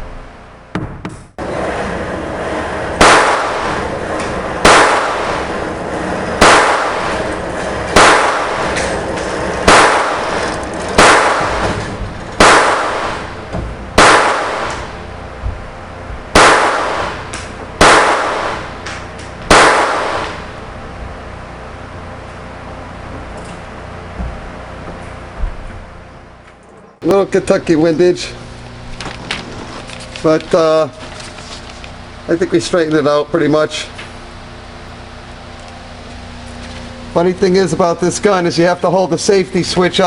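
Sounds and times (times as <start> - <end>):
pistol shots with ringing echo: 3.0 - 3.9, 4.6 - 5.7, 6.4 - 9.0, 9.6 - 13.4, 14.0 - 15.0, 16.3 - 18.9, 19.5 - 20.6.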